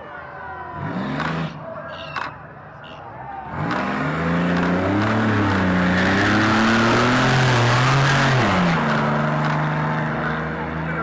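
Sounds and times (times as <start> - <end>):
car engine revving: 0.7 - 1.6, 3.4 - 11.0.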